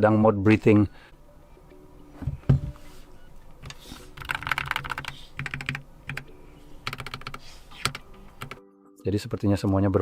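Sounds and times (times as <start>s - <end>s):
keyboard typing: 3.6s - 8.6s.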